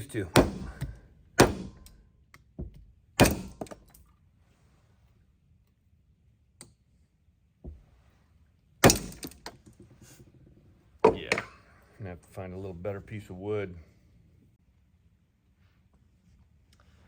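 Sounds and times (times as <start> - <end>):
hammer knocking on wooden block: 0.4 - 1.8.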